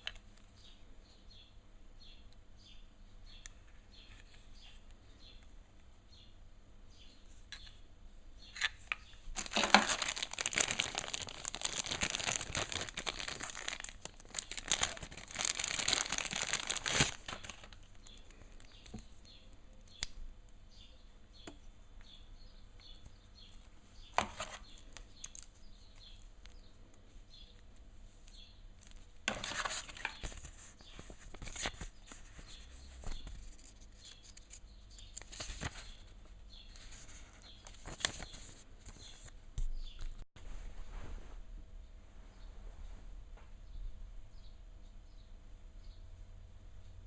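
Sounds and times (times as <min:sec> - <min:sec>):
packaging crinkling and rustling: 0:08.8 - 0:18.9, 0:28.8 - 0:32.4, 0:37.4 - 0:39.3.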